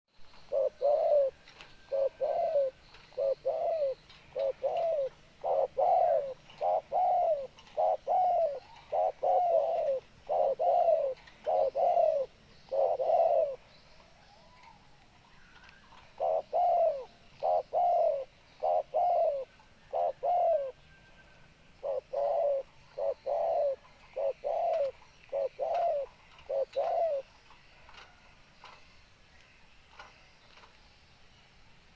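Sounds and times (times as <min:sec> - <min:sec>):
dove cooing: 0:00.3 - 0:13.7, 0:15.9 - 0:21.0, 0:21.8 - 0:28.2.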